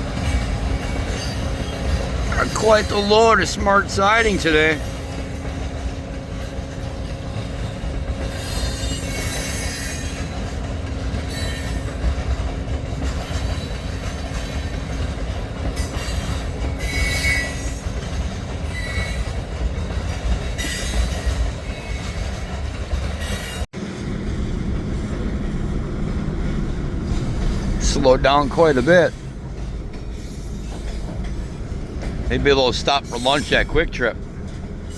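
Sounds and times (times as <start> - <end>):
train wheels rumbling on rails: 0.0 - 34.9.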